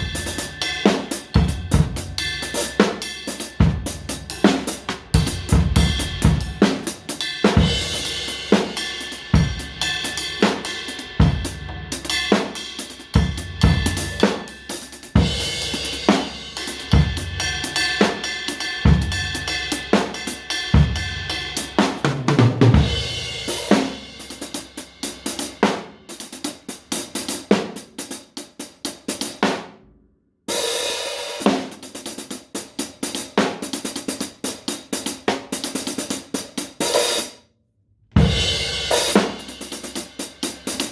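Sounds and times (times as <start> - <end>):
hi-hat and cymbal strokes: 0.0 - 22.0, 22.8 - 29.3, 38.4 - 40.9.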